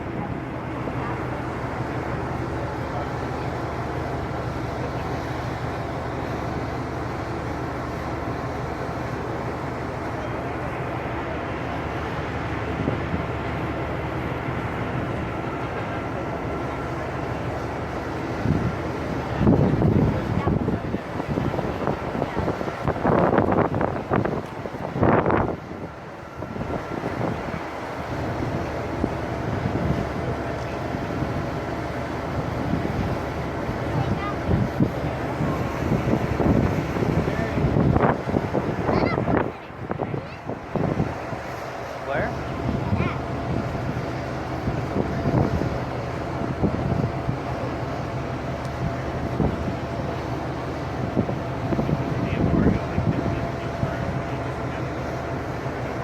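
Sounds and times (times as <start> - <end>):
ship running noise: 0.0 - 56.0
steady noisy haze: 0.0 - 56.0
wind buffeting microphone: 11.2 - 41.6, 42.2 - 56.0.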